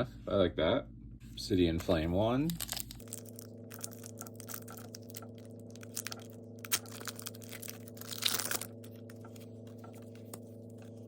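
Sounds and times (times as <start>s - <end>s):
steady low hum: 0.0s - 11.0s
foil wrapper crinkling and tearing: 1.9s - 10.9s.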